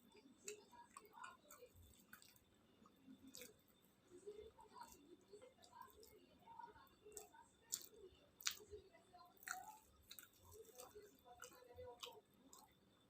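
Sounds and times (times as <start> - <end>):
person chewing food: 0.0 - 13.0
lip smacks and mouth clicks: 0.1 - 3.6, 7.1 - 8.7, 9.4 - 12.8.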